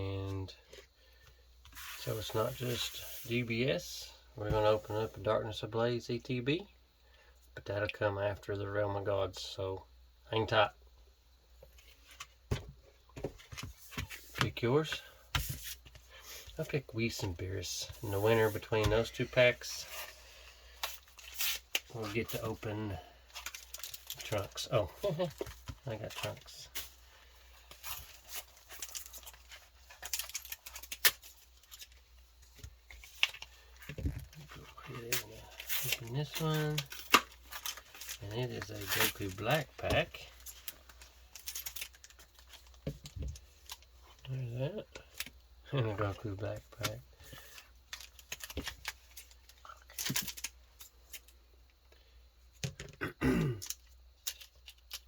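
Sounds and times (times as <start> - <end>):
foil wrappers crinkling: 20.8 - 32.0, 32.9 - 42.8, 46.7 - 51.3.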